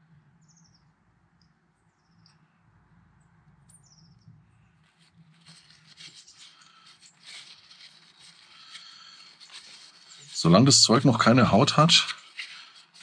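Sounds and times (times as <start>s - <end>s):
bird chirp: 0.2s - 10.7s
rubbing and sticky clicks: 4.8s - 13.0s.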